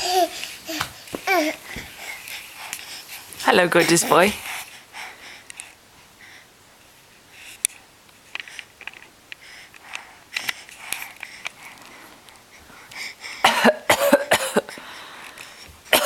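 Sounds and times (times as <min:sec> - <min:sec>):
baby fake coughing: 0:13.4 - 0:14.8.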